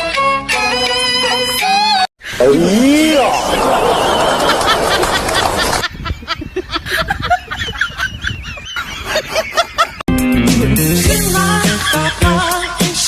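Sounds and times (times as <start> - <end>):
music: 0.0 - 2.1, 10.1 - 13.0.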